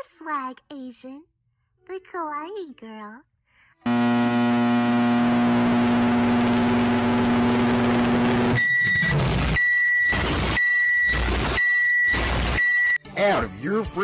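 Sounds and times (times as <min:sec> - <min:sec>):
microwave oven humming: 0:03.9 - 0:12.4
microwave beeps: 0:03.9 - 0:13.0.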